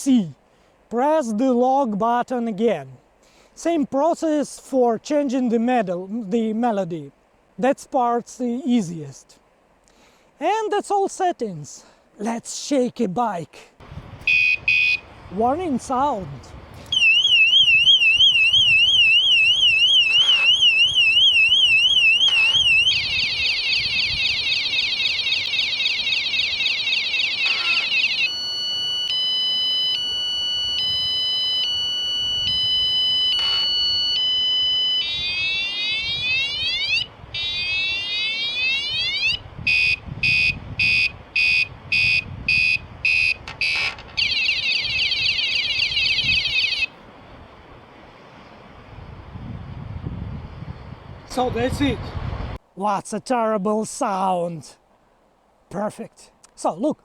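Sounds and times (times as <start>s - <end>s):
bicycle alarm siren: 14.2s - 15.1s, 16.9s - 46.9s.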